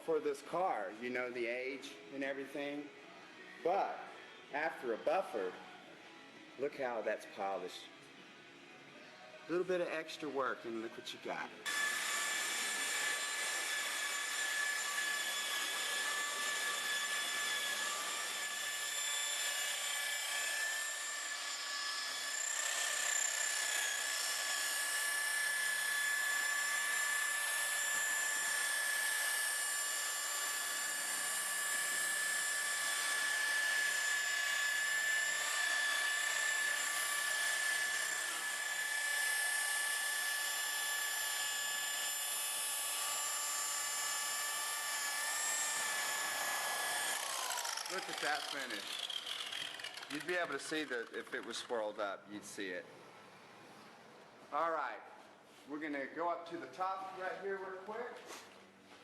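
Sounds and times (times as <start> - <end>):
electric polisher whining: 11.7 - 51.0.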